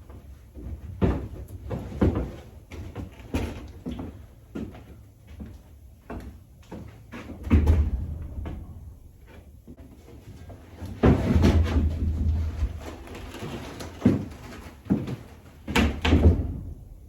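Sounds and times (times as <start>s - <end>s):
heavy bumping: 7.4s - 9.8s, 11.0s - 14.3s
irregular knocks and thumps: 7.4s - 9.8s, 11.0s - 15.0s.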